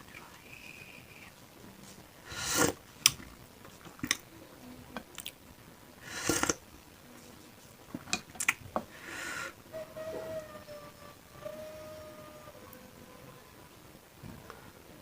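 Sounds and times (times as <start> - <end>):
noisy burst: 0.0 - 15.0
close chewing and eating: 4.9 - 5.5.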